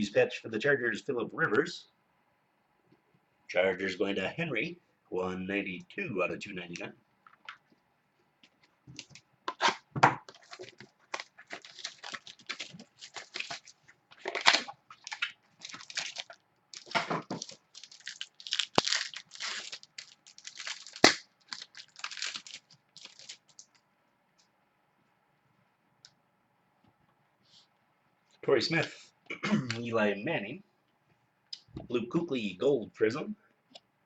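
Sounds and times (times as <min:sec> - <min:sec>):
cards rustling: 0:08.6 - 0:23.8
card pack wrappers tearing and crinkling: 0:09.0 - 0:23.8.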